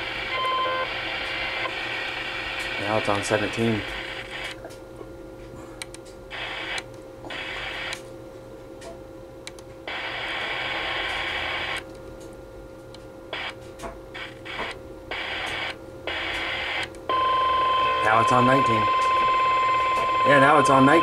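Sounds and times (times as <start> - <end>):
harsh static bursts: 0.0 - 4.6, 6.3 - 8.0, 9.9 - 11.8, 13.3 - 13.6, 14.2 - 21.0.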